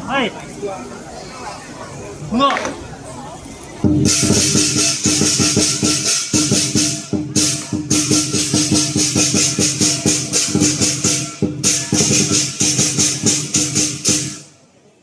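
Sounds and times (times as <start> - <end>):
drum beaten fast: 3.8 - 14.5
clashing cymbals: 3.9 - 14.6.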